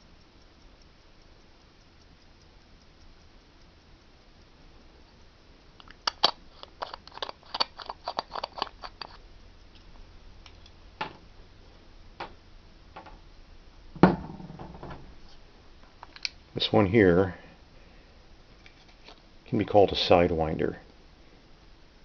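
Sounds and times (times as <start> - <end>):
pocket watch clicking: 5.8 - 9.2.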